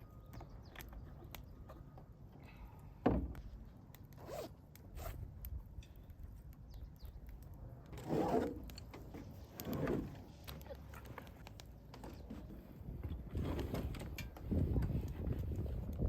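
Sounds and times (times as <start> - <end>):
rustling and handling of gear: 4.2 - 5.2
zipper being pulled: 4.2 - 5.2, 8.0 - 8.7.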